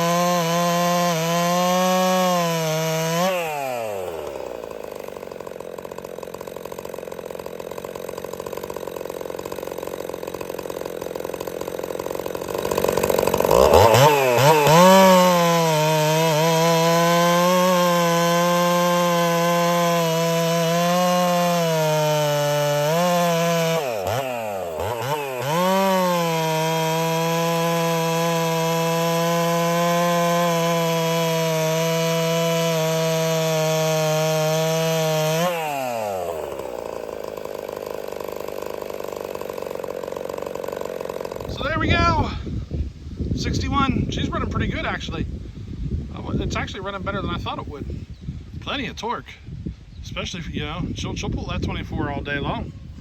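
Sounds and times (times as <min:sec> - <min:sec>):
chainsaw cutting wood: 0:00.0 - 0:47.9
chainsaw idling and revving: 0:00.0 - 0:47.9.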